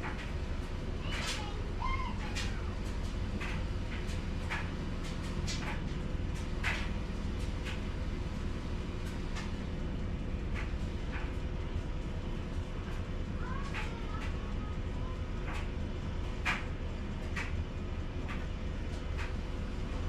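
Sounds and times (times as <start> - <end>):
laundry machines humming: 0.0 - 20.0.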